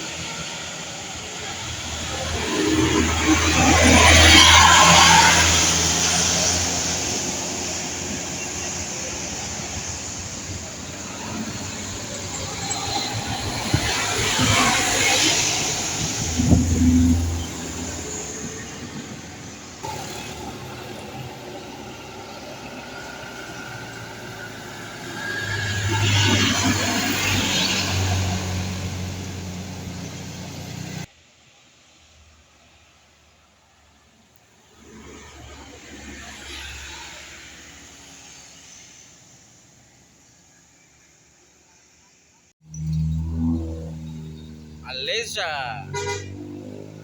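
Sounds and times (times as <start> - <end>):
vehicles driving past: 0.0 - 32.8, 42.6 - 47.0.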